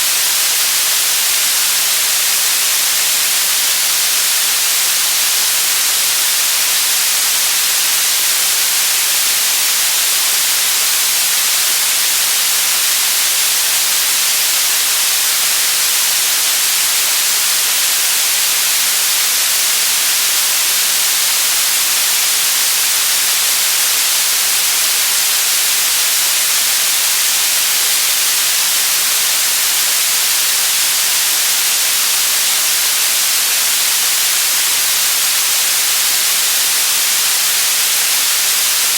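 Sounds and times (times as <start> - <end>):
steady white noise hiss: 0.0 - 38.9.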